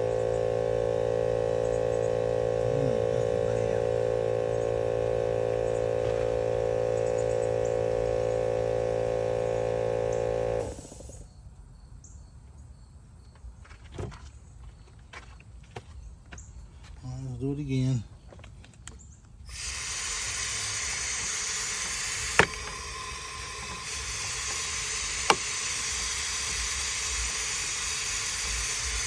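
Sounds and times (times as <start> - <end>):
machine humming: 0.0 - 11.3, 19.5 - 29.0.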